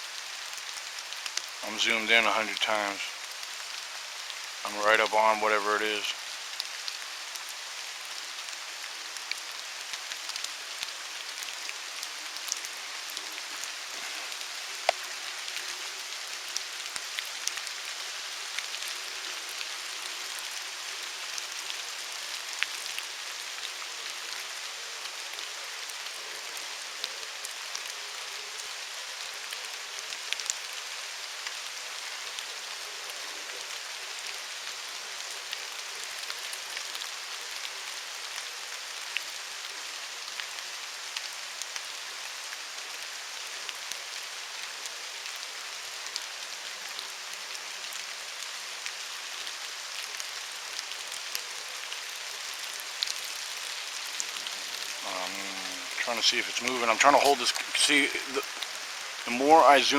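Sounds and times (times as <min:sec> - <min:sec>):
steady rain hiss: 0:00.0 - 0:59.9
raindrops ticking: 0:00.5 - 0:26.2, 0:50.0 - 0:59.9.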